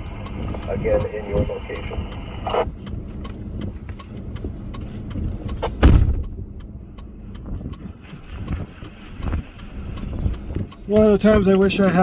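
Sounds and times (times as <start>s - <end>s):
faint repeated ticks: 0.0s - 12.0s
vehicle cabin rumble: 0.0s - 12.0s
loud thump: 5.7s - 6.2s.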